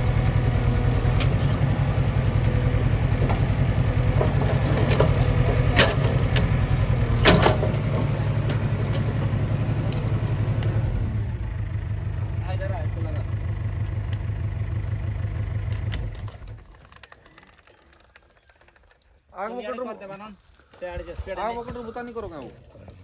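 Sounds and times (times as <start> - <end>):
diesel engine running: 0.0 - 16.8
sharp machine knocks: 7.2 - 7.9.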